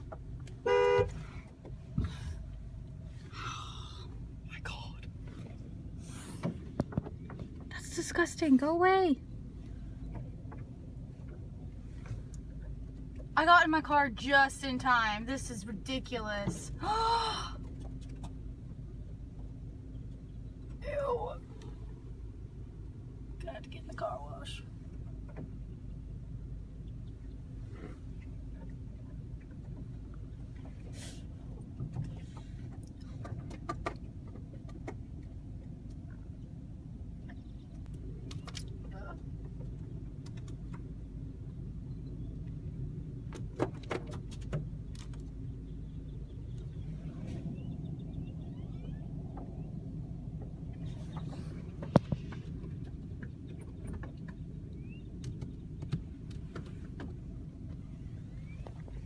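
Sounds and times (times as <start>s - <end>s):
car cabin rumble: 0.0s - 59.0s
birds tapping on car: 6.4s - 7.8s, 9.9s - 11.4s, 31.6s - 36.2s, 37.1s - 47.0s, 47.6s - 59.0s.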